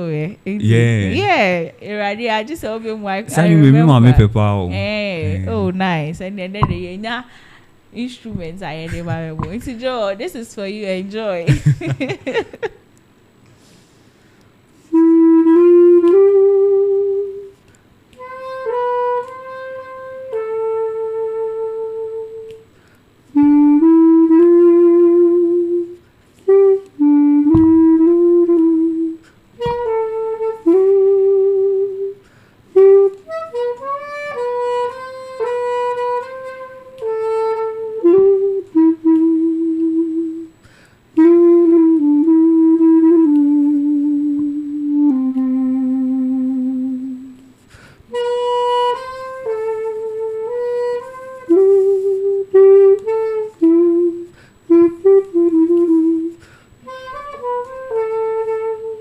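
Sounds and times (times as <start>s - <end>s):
solo clarinet melody: 3.3s - 5.9s, 6.6s - 6.9s, 14.8s - 22.7s, 23.3s - 40.5s, 41.2s - 59.0s.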